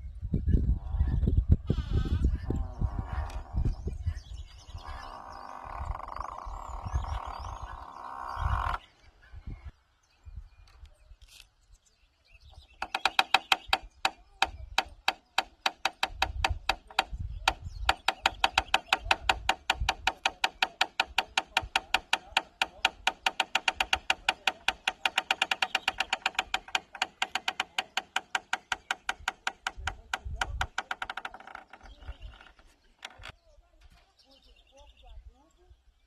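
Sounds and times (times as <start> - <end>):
wooden gate creaking: 4.8 - 8.8, 23.4 - 33.4.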